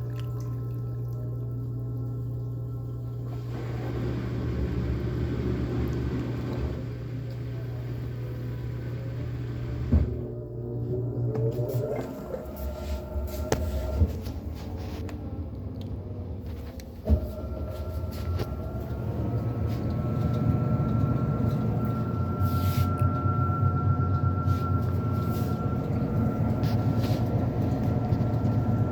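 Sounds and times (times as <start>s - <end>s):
washing machine running: 0.0s - 28.9s
high whine: 9.9s - 28.9s.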